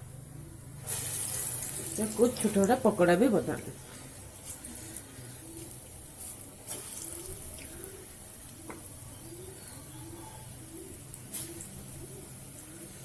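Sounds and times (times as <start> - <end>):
oil sizzling: 0.8 - 13.0
pigeon cooing: 6.7 - 13.0.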